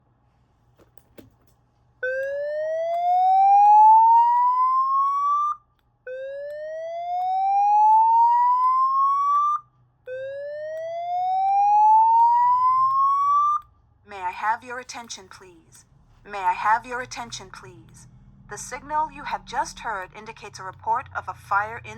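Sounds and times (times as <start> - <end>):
fire alarm slow whoop tone: 2.0 - 13.7.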